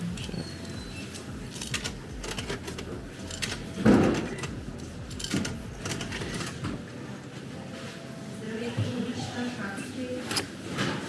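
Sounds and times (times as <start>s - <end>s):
ticket machine clicking and clatter: 0.0s - 6.9s.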